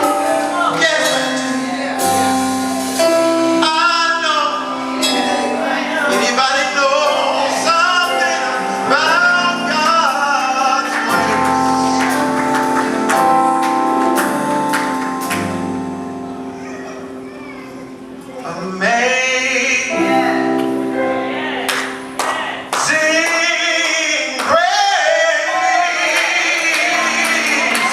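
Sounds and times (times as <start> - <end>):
gospel group singing with band: 0.0 - 15.1, 22.3 - 27.9.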